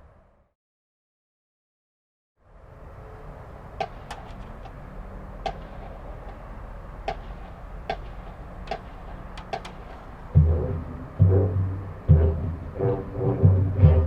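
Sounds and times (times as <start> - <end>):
low steady hum: 2.5 - 14.0
sharp clicks: 3.8 - 4.8, 7.1 - 10.3.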